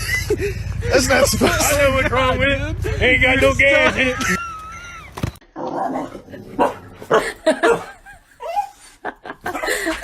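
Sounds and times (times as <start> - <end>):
dog barking and yelping: 5.6 - 8.9.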